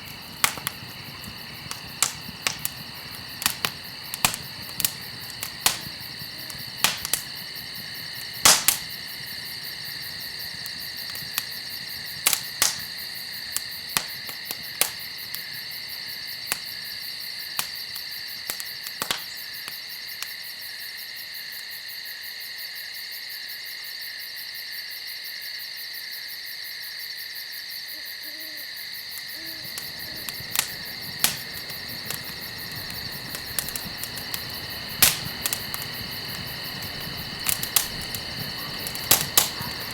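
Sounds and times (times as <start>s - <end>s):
faint low calls: 0.0s - 12.8s, 29.3s - 39.9s
campfire crackling and popping: 0.0s - 20.4s, 29.1s - 39.9s
insect chorus: 0.0s - 39.9s.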